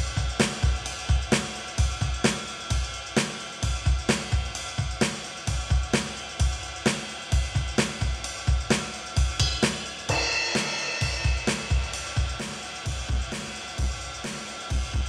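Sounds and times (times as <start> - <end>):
drum kit playing a beat: 0.0 - 15.0
cymbal ringing: 9.4 - 13.5.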